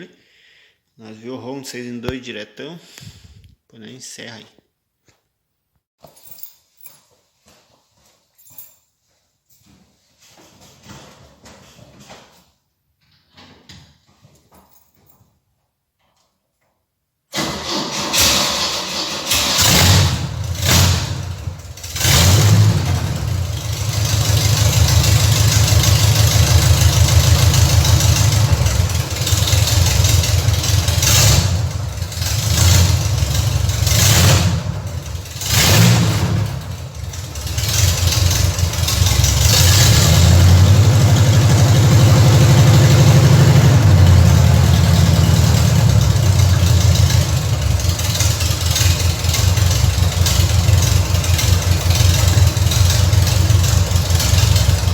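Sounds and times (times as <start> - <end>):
car engine idling and revving: 18.2 - 54.9.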